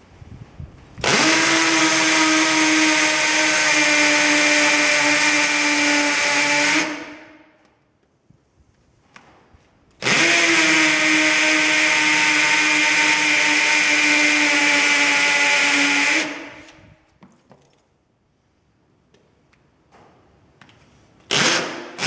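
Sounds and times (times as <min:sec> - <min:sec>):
electric drill boring into concrete: 0:01.0 - 0:07.0, 0:10.0 - 0:16.8, 0:21.3 - 0:22.0.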